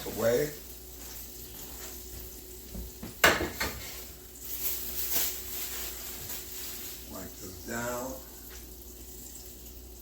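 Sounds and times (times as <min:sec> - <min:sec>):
chicken frying in oil: 0:00.0 - 0:10.0
kitchenware clattering: 0:02.7 - 0:06.5.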